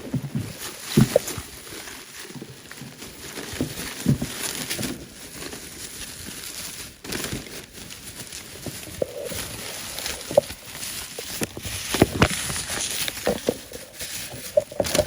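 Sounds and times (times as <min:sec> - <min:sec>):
packaging rustling and crinkling: 0:00.0 - 0:15.0.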